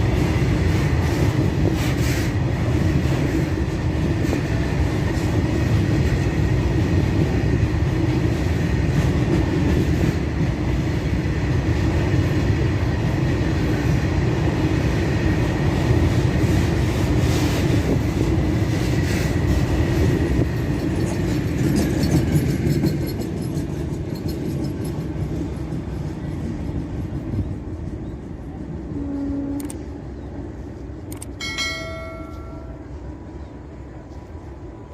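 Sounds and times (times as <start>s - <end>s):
train wheels rumbling on rails: 0.0s - 34.9s
train horn: 28.8s - 30.0s.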